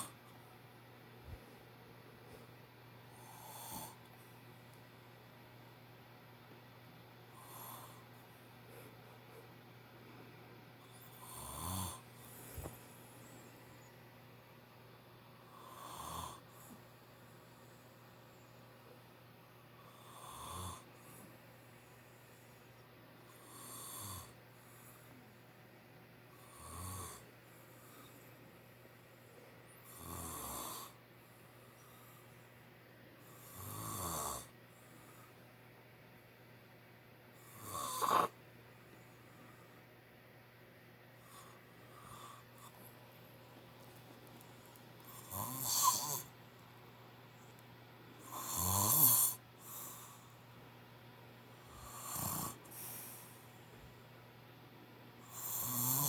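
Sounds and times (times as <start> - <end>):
man snoring: 3.1 - 4.0, 7.4 - 8.0, 11.1 - 12.1, 15.5 - 16.7, 19.8 - 20.9, 23.3 - 24.4, 26.4 - 27.3, 29.9 - 31.0, 33.3 - 34.5, 37.4 - 38.4, 41.3 - 42.8, 45.1 - 46.3, 48.2 - 50.3, 51.7 - 53.3, 55.2 - 56.0.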